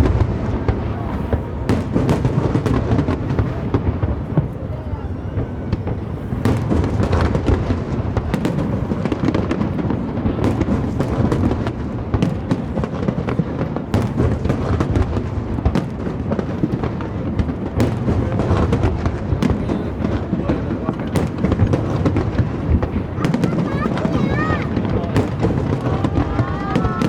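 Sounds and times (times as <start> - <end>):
firework cracks and pops: 0.0 - 4.8, 5.4 - 27.0
low rumble of fireworks: 0.0 - 27.0.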